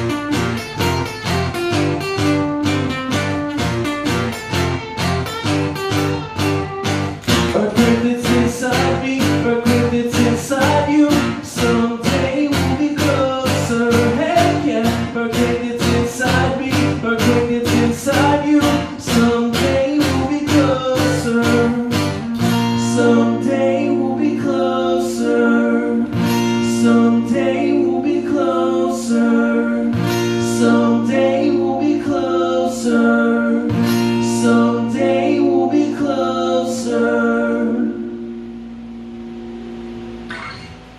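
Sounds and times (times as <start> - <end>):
acoustic guitar strumming: 0.0 - 40.9
picked guitar notes: 0.0 - 40.9
sustained low bass note: 37.0 - 40.9.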